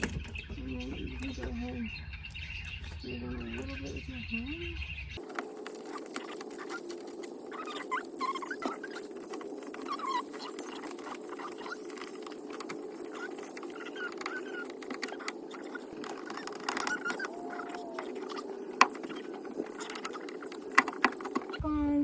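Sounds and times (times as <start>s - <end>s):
plastic trim clicks and squeaks: 5.2s - 21.6s.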